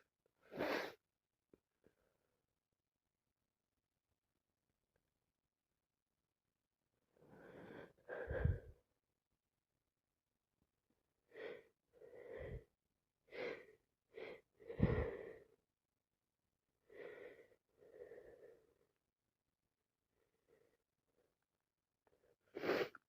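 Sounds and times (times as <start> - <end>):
person gasping: 14.7 - 15.5.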